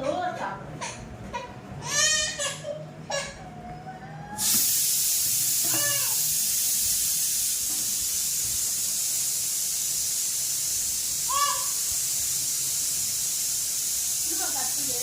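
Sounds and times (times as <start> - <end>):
child whimpering: 1.8 - 4.4
pressure cooker steam hiss: 4.4 - 15.0.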